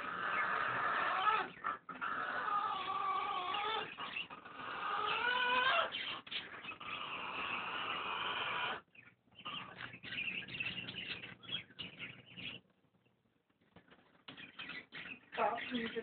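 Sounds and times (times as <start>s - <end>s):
macaw snoring: 0.0s - 8.9s.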